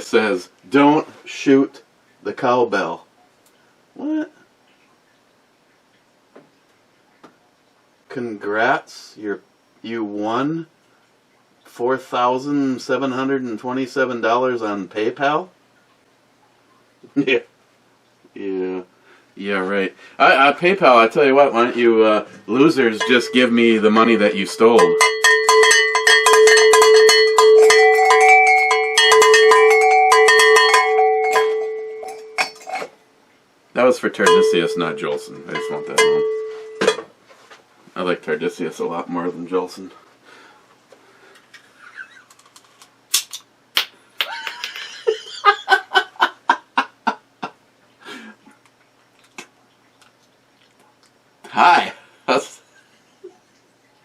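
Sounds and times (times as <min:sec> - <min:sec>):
short ringing pulses: 0:22.8 - 0:32.9, 0:34.2 - 0:37.0
cowbell struck rapidly: 0:22.9 - 0:32.7, 0:34.2 - 0:37.0
sharp click: 0:42.5 - 0:43.9
toy cap gun cracks: 0:43.1 - 0:43.9.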